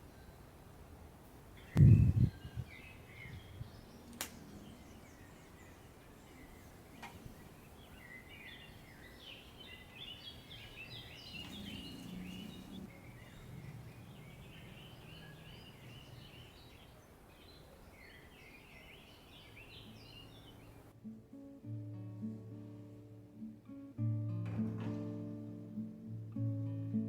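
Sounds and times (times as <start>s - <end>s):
small birds twittering: 0.0s - 20.9s
steady background hiss: 0.0s - 24.2s.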